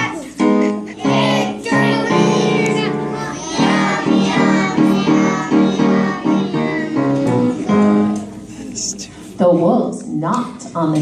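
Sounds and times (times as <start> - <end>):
children singing: 0.0 - 8.2
musical accompaniment: 0.0 - 8.6.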